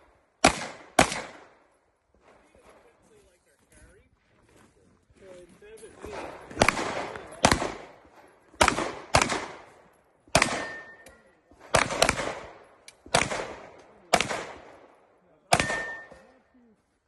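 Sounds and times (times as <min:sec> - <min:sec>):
gunshots echoing: 0:00.0 - 0:02.4, 0:06.0 - 0:16.3.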